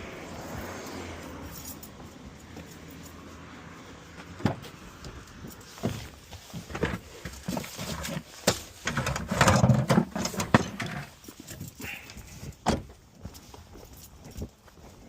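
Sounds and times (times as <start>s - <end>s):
rubbing and clattering: 5.7s - 11.8s.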